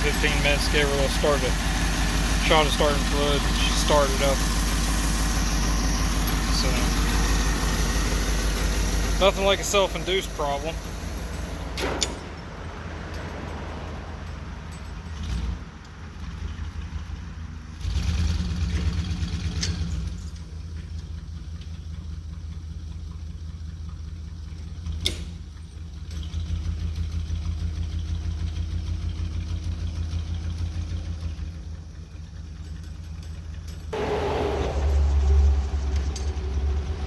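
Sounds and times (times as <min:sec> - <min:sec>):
truck engine revving: 0:00.0 - 0:14.3, 0:34.0 - 0:37.0
metallic clank: 0:11.4 - 0:12.5.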